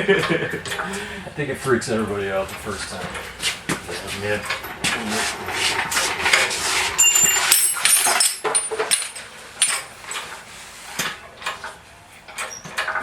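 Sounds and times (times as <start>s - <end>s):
metal parts clinking and knocking: 6.9s - 10.2s.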